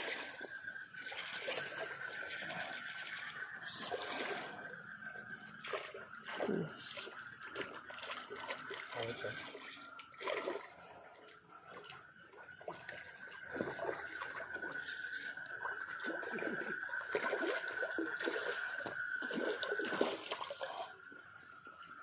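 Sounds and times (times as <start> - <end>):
water splashing and dribbling: 0.0 - 22.0.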